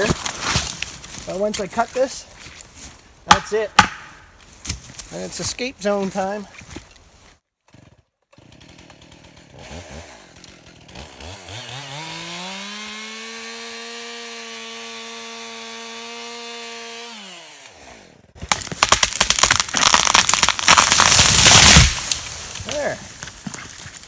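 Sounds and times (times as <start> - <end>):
tree cracking and crashing down: 0.0 - 2.2, 18.4 - 24.0
chainsaw revving: 7.8 - 18.1.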